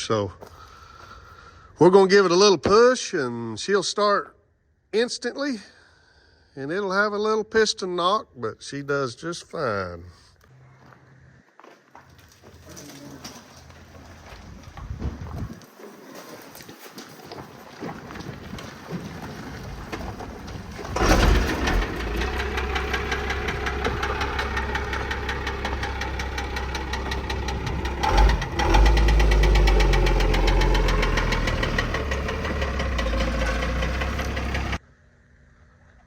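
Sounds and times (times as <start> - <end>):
diesel engine knocking clatter: 19.6 - 34.8.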